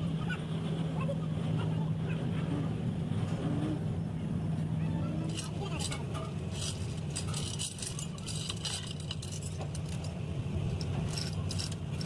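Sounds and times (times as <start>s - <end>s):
low engine hum: 0.0s - 12.0s
metal clinking and rattling: 5.3s - 12.0s.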